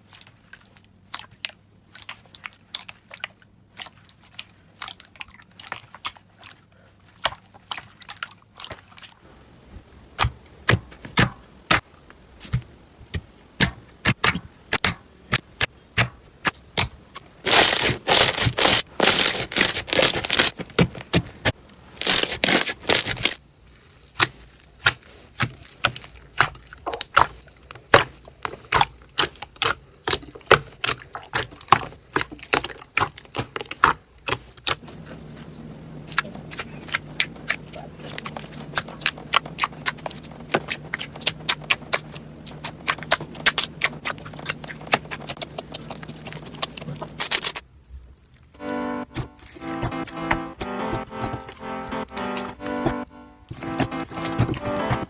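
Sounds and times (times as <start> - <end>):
slime crackling and popping: 13.6 - 20.6, 21.2 - 23.4, 24.0 - 47.6.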